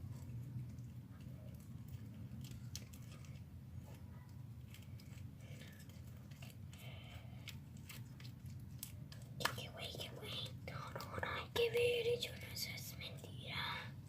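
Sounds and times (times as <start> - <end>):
slime sticky clicks and crackles: 4.6 - 10.0.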